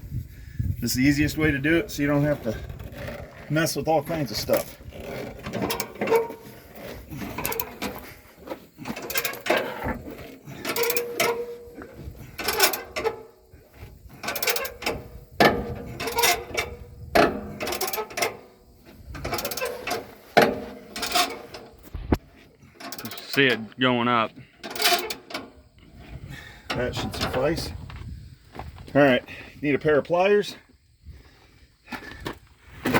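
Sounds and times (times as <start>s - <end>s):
hand jack ratcheting metal clicks: 10.2s - 11.5s, 12.4s - 13.1s, 14.2s - 18.4s, 19.1s - 21.6s, 24.6s - 25.4s.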